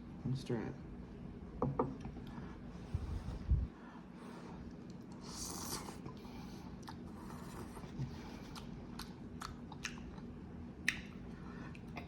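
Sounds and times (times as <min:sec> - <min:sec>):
person chewing noodles: 0:04.6 - 0:12.0
wet mouth clicks and smacks: 0:08.5 - 0:11.2.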